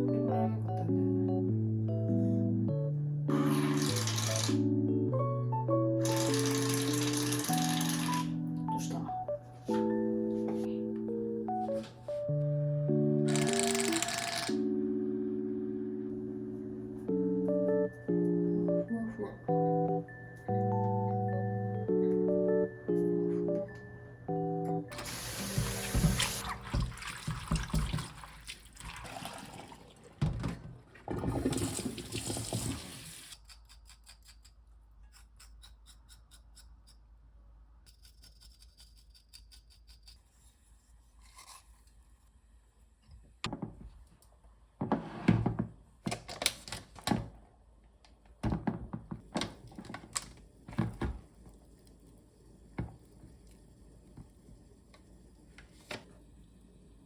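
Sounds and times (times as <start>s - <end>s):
water running: 24.9s - 33.3s.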